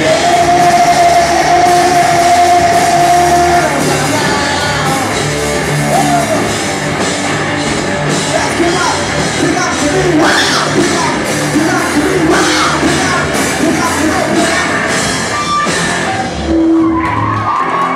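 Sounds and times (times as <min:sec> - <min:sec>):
person singing and yelling: 0:00.0 - 0:05.2, 0:08.2 - 0:17.2
live rock band playing: 0:00.0 - 0:17.9.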